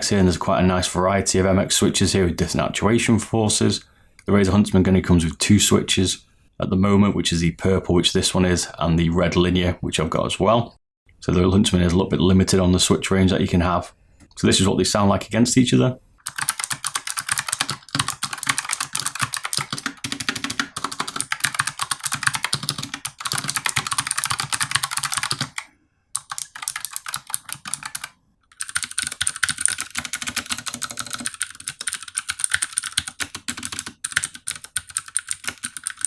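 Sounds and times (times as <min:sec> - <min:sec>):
fast typing on mechanical keyboards: 0:16.3 - 0:36.0.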